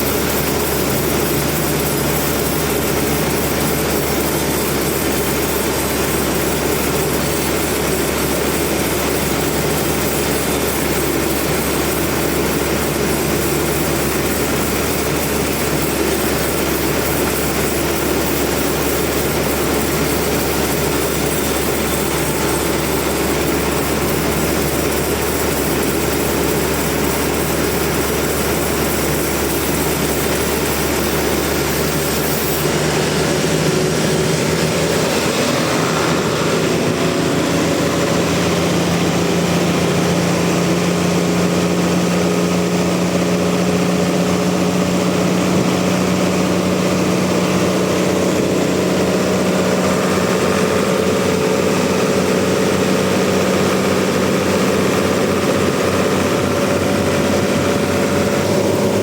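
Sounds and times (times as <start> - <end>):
sawmill machinery drone: 0.0 - 59.0
higher hum: 29.7 - 40.8.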